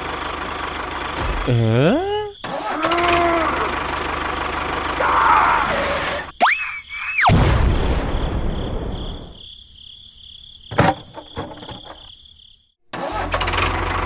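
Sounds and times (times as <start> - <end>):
small engine idling: 0.0 - 5.2, 13.0 - 14.0.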